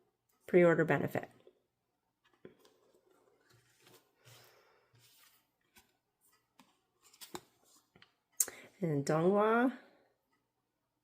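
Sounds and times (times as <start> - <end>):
soft rustling of cards: 1.4 - 8.4.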